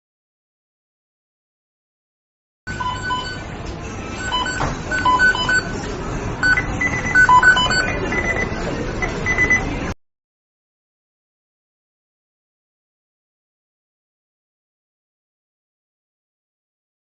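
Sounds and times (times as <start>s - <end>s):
short electronic beeps: 2.7s - 3.5s, 4.2s - 5.8s, 6.4s - 9.8s
steady background noise: 2.7s - 10.0s.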